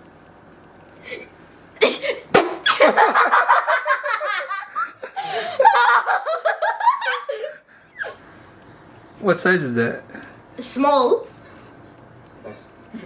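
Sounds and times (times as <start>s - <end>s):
laughter in bursts: 1.8s - 8.2s.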